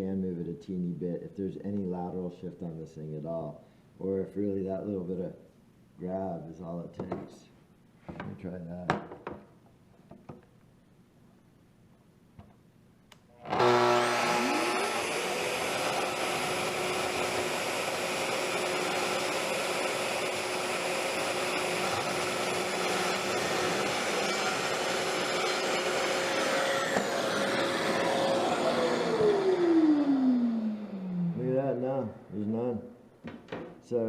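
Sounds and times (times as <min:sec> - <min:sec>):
saw cutting wood: 0:13.4 - 0:31.5
circular saw whining: 0:13.4 - 0:32.1
dust extractor running: 0:13.5 - 0:31.5.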